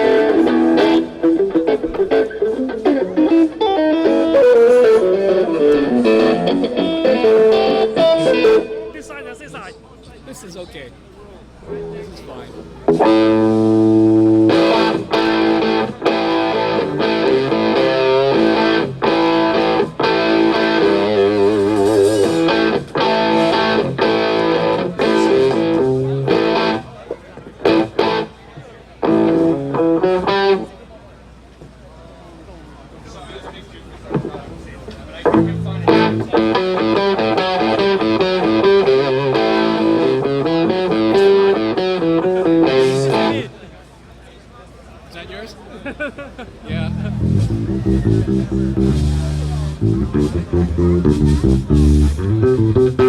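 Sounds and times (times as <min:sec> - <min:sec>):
electric guitar chords: 0:00.0 - 0:09.4, 0:12.6 - 0:27.0, 0:27.6 - 0:28.4, 0:29.0 - 0:30.8, 0:35.3 - 0:43.6, 0:46.7 - 0:53.0.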